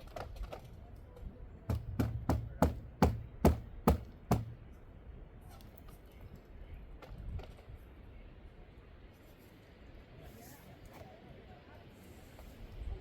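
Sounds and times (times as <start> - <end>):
hammer strikes: 1.7 - 4.6.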